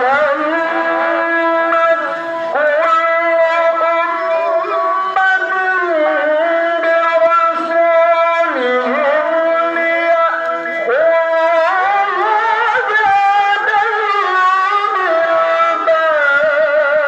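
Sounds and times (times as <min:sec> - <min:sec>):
man reciting melodically: 0:00.0 - 0:17.0.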